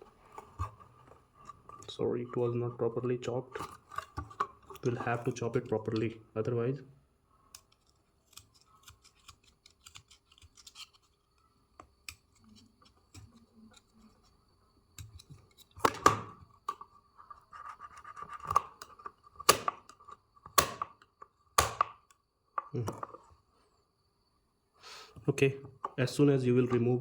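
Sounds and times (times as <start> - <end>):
blade scraping plastic: 7.6 - 11.2.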